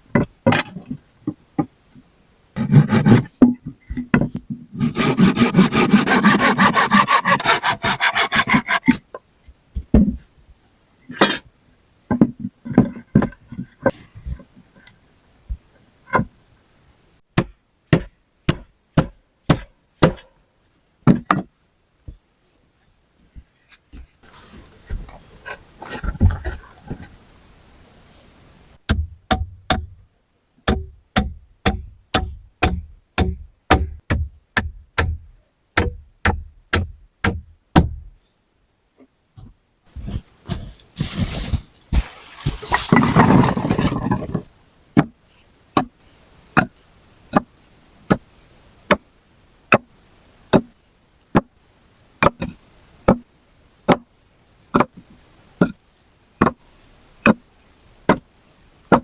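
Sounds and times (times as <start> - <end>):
rough scraping noise: 2.6 - 3.4, 4.8 - 9.1, 40.0 - 44.5
tool striking wood: 2.6 - 9.0, 17.4 - 20.3, 28.9 - 30.0, 30.7 - 35.2, 35.8 - 38.1.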